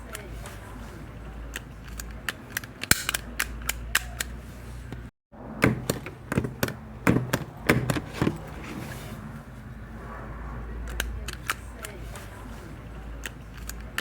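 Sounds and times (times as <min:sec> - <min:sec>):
stapler clicking: 0:01.6 - 0:04.3.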